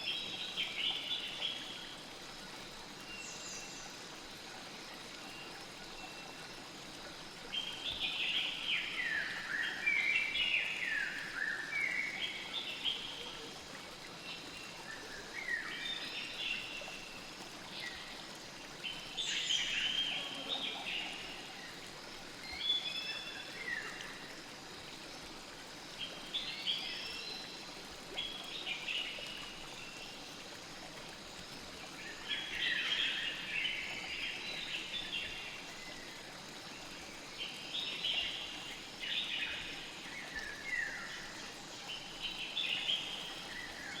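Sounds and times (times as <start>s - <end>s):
stream flowing: 0.0s - 44.0s
songbird singing: 18.8s - 21.8s.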